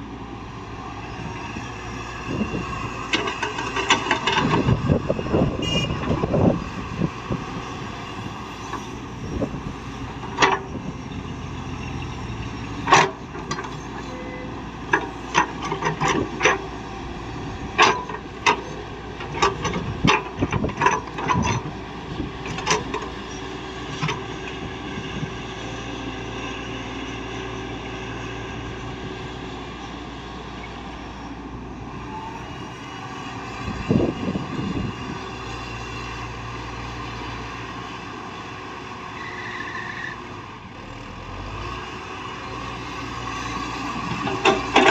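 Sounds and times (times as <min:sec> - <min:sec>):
heavy machinery running: 0:40.3 - 0:44.9.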